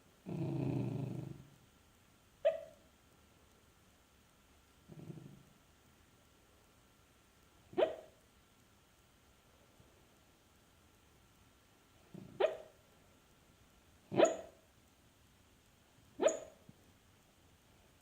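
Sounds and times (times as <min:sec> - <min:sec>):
sleeping dog woofing: 0:00.2 - 0:01.5, 0:02.4 - 0:02.8, 0:04.9 - 0:05.5, 0:12.1 - 0:12.8, 0:14.1 - 0:14.6, 0:16.2 - 0:16.6.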